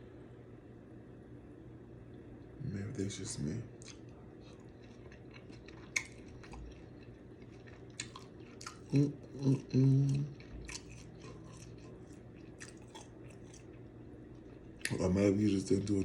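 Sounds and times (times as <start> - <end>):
chewing and lip smacking: 3.8 - 15.0
person humming mmm: 8.9 - 10.4.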